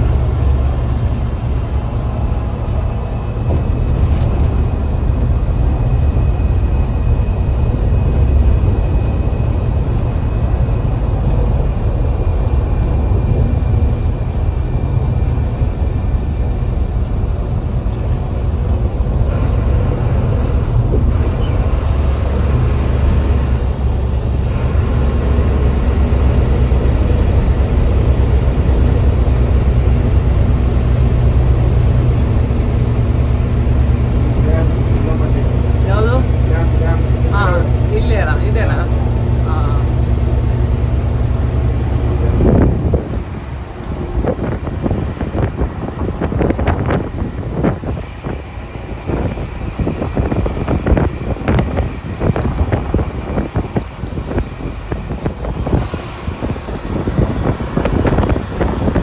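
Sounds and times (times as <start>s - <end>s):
diesel engine drone: 0.0s - 59.0s.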